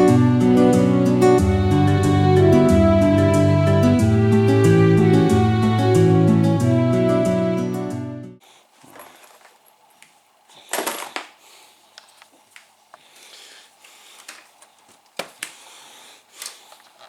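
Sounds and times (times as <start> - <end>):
rattle: 8.8 - 11.4.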